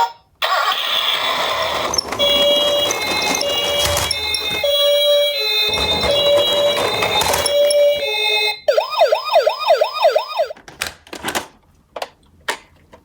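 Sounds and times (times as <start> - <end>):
two-tone toy siren: 0.0 - 10.6
plastic toy cars clicking: 0.8 - 4.6, 5.7 - 7.9
rattling noise: 1.0 - 4.8, 5.7 - 7.9
yelp siren: 1.9 - 10.6.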